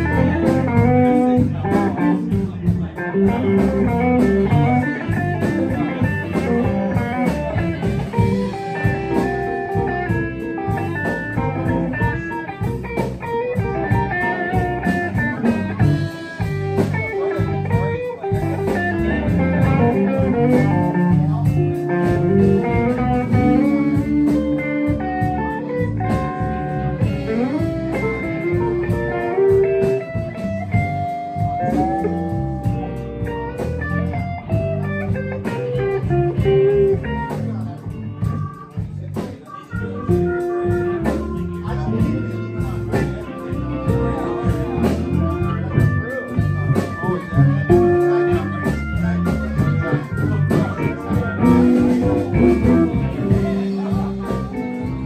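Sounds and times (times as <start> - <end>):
blues band playing: 0.0 - 55.0
lead guitar with sliding notes: 0.0 - 55.0.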